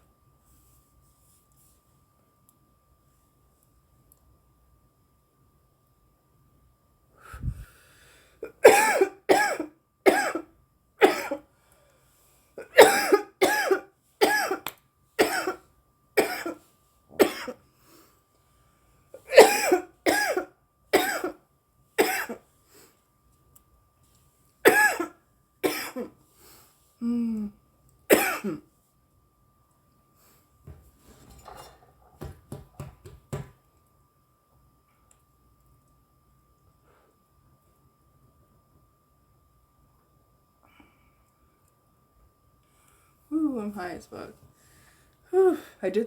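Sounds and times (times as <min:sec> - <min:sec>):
woman coughing: 0:08.5 - 0:11.4, 0:12.6 - 0:14.6, 0:15.2 - 0:15.6, 0:16.2 - 0:16.6, 0:17.2 - 0:17.6, 0:19.2 - 0:21.4, 0:22.0 - 0:22.4, 0:24.6 - 0:26.1, 0:28.1 - 0:28.6.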